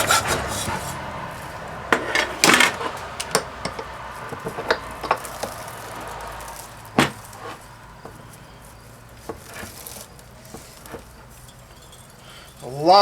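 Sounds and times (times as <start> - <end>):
metal parts clicking and clinking: 1.9 - 7.3, 9.6 - 13.0.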